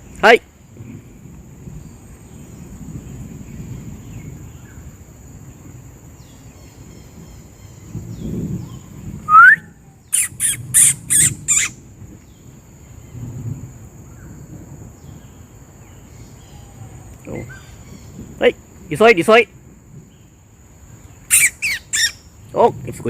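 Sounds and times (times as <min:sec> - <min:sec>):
harsh animal calls: 0:10.1 - 0:11.8, 0:21.3 - 0:22.3.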